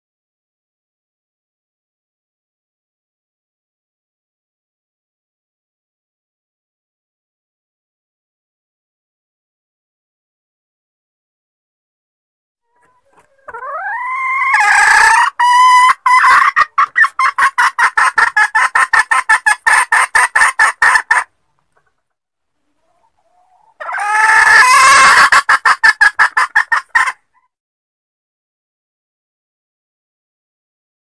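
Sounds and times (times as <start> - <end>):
junglefowl clucking call: 12.7 - 22.0, 22.8 - 27.5.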